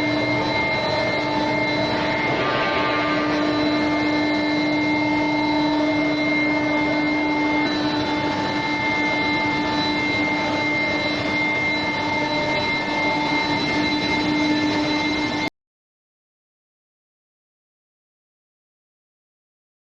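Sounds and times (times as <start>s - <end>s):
constant whining tones: 0.0s - 15.5s
steady industrial noise: 0.0s - 15.5s.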